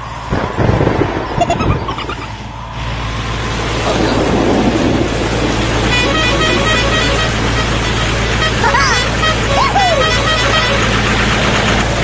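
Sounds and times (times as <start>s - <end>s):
vehicle engine running: 0.0s - 12.0s
short horn toots: 5.9s - 11.0s.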